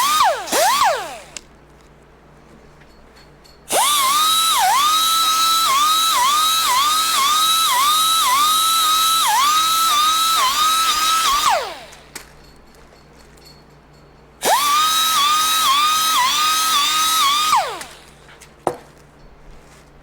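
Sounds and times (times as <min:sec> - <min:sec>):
air grinder whining: 0:00.0 - 0:01.4, 0:03.7 - 0:12.2, 0:14.4 - 0:18.2.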